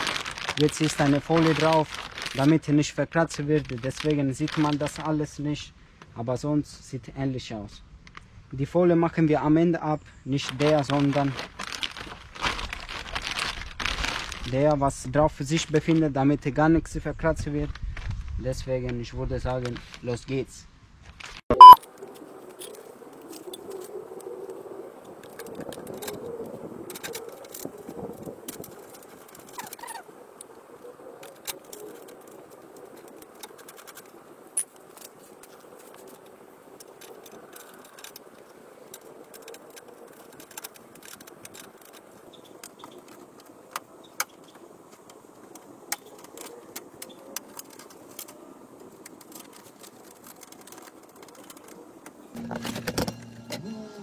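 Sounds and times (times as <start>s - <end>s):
clicks and knocks of parts and tools: 31.2s - 53.6s.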